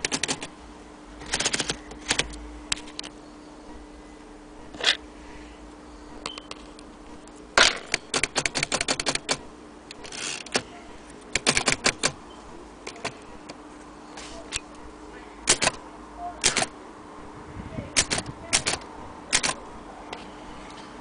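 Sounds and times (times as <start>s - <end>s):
typewriter key strikes: 7.9s - 9.4s, 11.4s - 12.2s, 18.0s - 19.6s.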